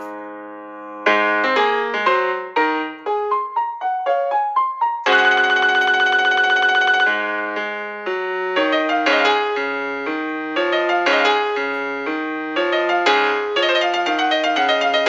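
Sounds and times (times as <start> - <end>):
keyboard playing alarm tune: 3.6 - 15.0.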